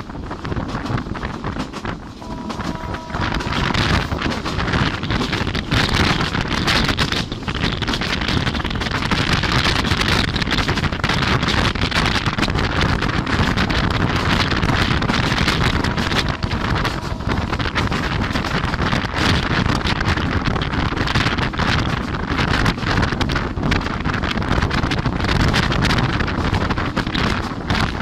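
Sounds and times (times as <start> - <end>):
train running noise: 0.0 - 28.0
wind buffeting microphone: 0.0 - 28.0.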